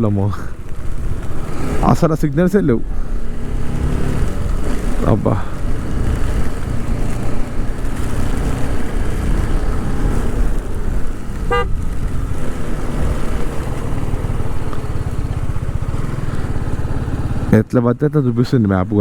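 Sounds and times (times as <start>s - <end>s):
motorcycle engine running: 0.0s - 2.1s, 2.7s - 17.6s
horn toot: 11.4s - 11.8s.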